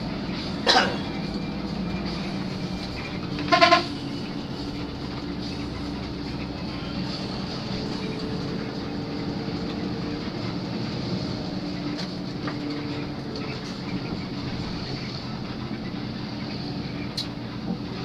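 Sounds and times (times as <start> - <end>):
bus engine drone: 0.0 - 18.0
road noise: 0.0 - 18.0.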